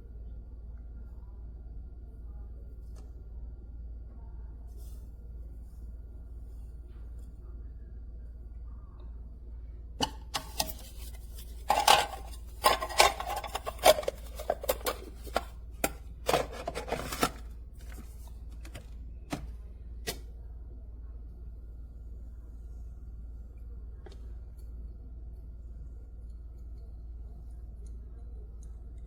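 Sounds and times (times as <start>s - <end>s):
coffee gear knocking and clinking: 10.0s - 19.4s.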